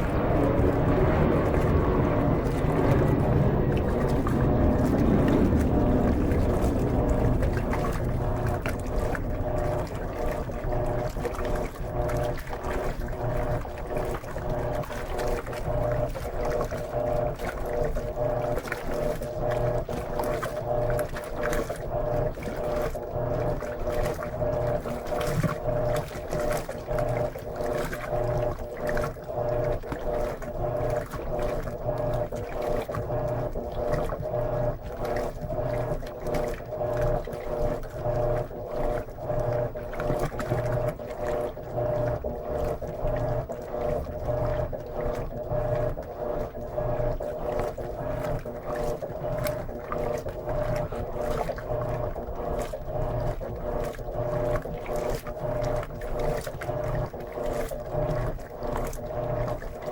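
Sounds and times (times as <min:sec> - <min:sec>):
rushing water: 0:00.0 - 0:59.9
washing machine motor hum: 0:00.0 - 0:59.9
water sloshing: 0:00.0 - 0:59.9.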